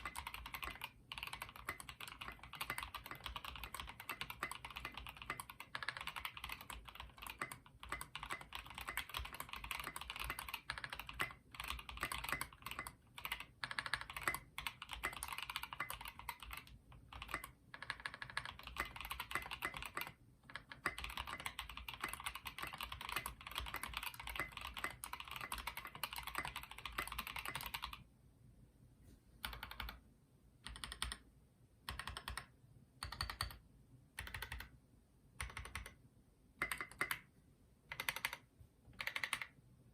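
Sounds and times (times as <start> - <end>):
mechanical keyboard typing: 0.0 - 28.1, 29.4 - 30.0, 30.6 - 33.6, 34.2 - 34.8, 35.4 - 36.0, 36.6 - 37.3, 37.9 - 39.6.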